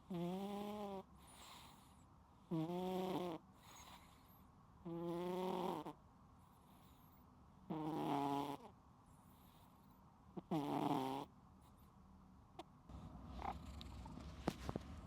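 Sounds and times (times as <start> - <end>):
cat snoring: 0.0 - 6.0, 7.7 - 8.7, 10.4 - 11.3, 13.0 - 14.4.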